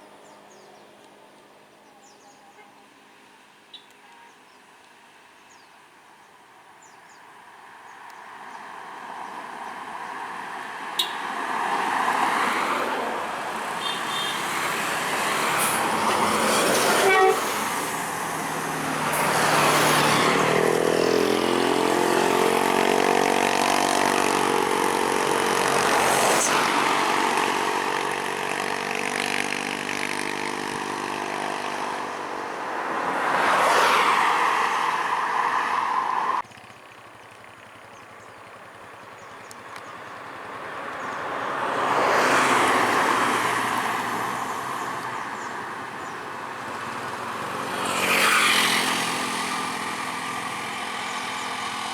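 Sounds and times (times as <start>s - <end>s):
heavy vehicle engine and tyres: 10.5s - 51.9s
multi-tone musical air horn: 16.9s - 17.6s.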